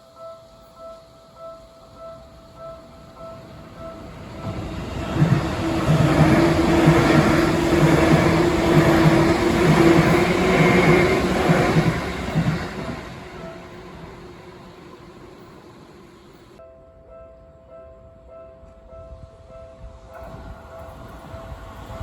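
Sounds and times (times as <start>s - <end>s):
level crossing warning bell: 0.0s - 16.6s
train passing: 0.0s - 16.6s, 18.9s - 22.0s
rhythmic clatter of wheels: 2.8s - 16.6s.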